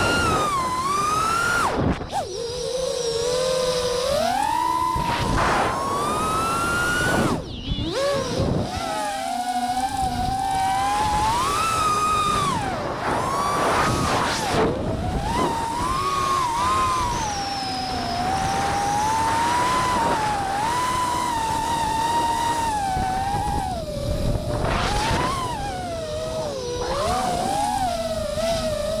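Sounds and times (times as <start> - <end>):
drone propellers whining: 0.0 - 29.0
wind buffeting microphone: 9.9 - 29.0.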